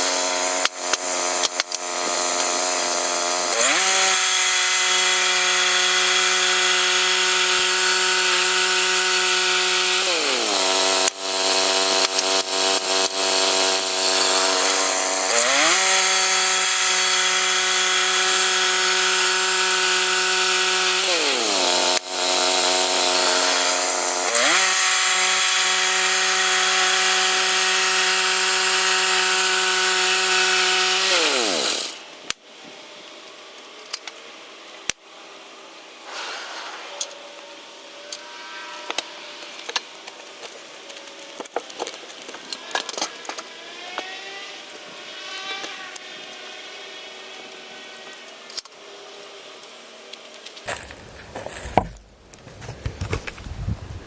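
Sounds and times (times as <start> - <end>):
chainsaw revving: 0.0 - 32.0.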